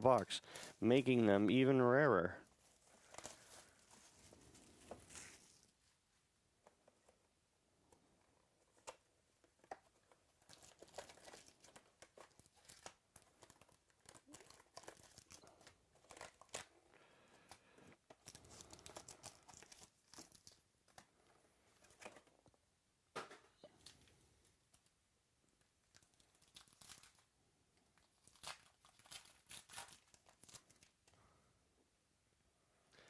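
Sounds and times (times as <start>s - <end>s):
cards being handled: 2.5s - 5.7s
wrappers crinkling and tearing: 2.5s - 5.7s, 9.6s - 16.9s, 17.5s - 21.1s, 25.8s - 27.3s, 27.9s - 31.1s.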